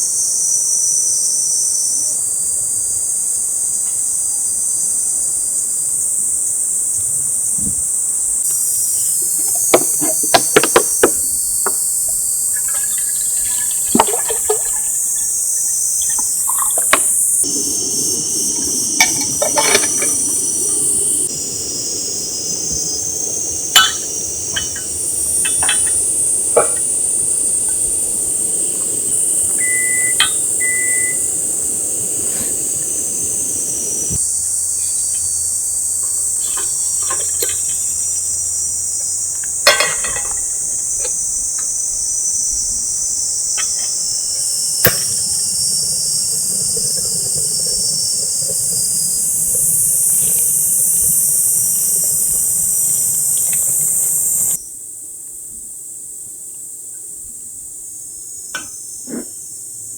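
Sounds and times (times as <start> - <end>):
insects chirping: 0.0 - 59.9
rushing water: 12.5 - 38.6
short beeps: 29.6 - 31.3.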